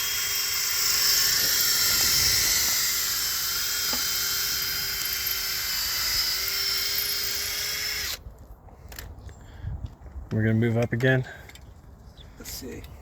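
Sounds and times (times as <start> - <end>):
power drill boring into concrete: 0.0 - 8.2.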